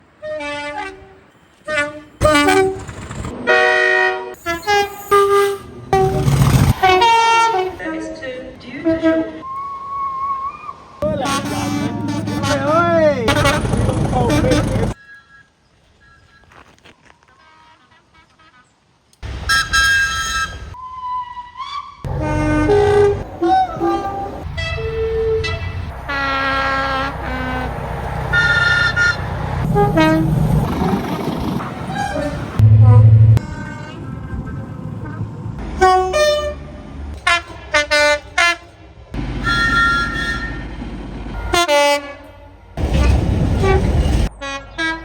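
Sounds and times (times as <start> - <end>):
train horn blasts: 0.1 - 2.8, 3.4 - 7.8, 11.0 - 15.0, 22.1 - 30.7, 31.9 - 34.0, 35.0 - 38.8, 39.4 - 45.0.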